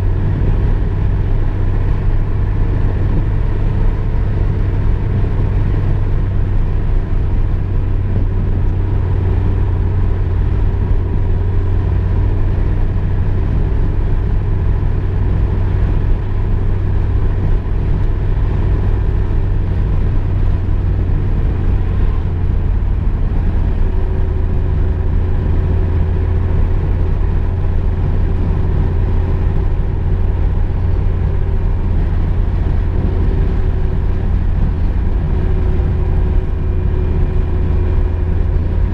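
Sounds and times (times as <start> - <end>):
car engine and road rumble: 0.0 - 38.9.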